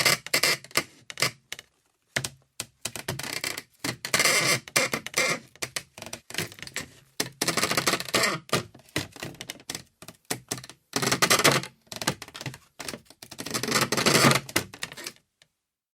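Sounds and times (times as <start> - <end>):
wood creaking: 0.0 - 9.8.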